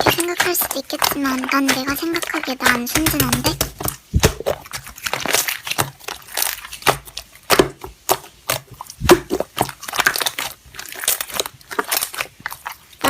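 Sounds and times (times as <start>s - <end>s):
slime crackling and popping: 0.0s - 13.0s.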